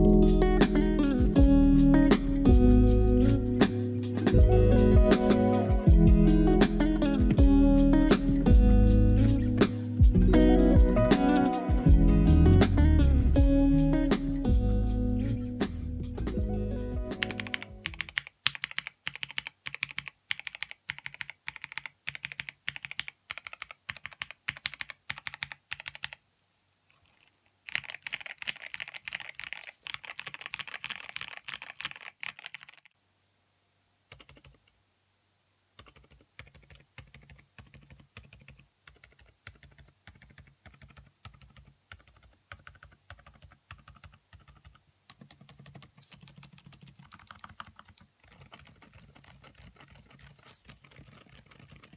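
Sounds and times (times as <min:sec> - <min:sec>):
mechanical keyboard typing: 0:17.0 - 0:26.2, 0:27.1 - 0:32.9, 0:34.1 - 0:34.6, 0:35.8 - 0:51.9.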